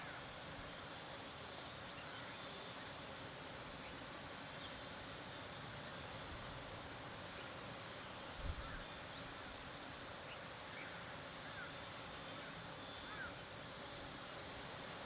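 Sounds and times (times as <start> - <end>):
outdoor background hiss: 0.0 - 15.0
faint bird chirps: 10.2 - 13.4.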